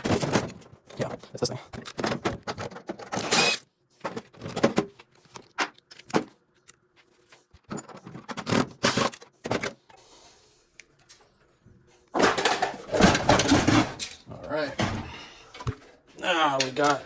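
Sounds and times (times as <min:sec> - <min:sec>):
metal parts clattering and scraping: 0:00.0 - 0:06.8, 0:07.5 - 0:09.9, 0:12.2 - 0:15.7.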